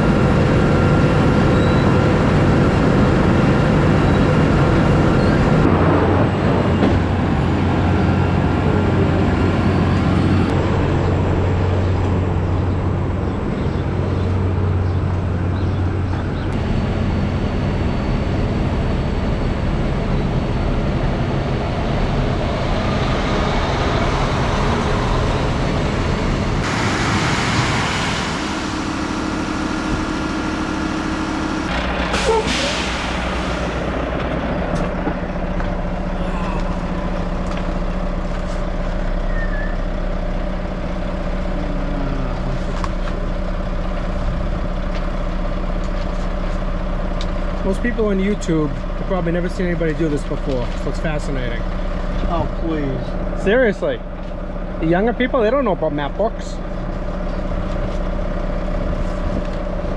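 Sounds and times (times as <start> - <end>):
diesel truck engine running: 0.0 - 59.9
air hiss: 32.1 - 33.9.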